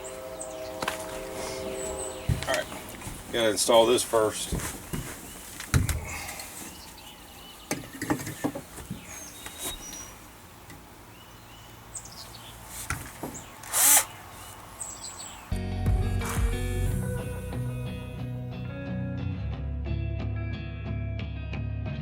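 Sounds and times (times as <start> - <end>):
faint birds chirping: 0.0 - 15.6
power drill burst: 13.6 - 14.2.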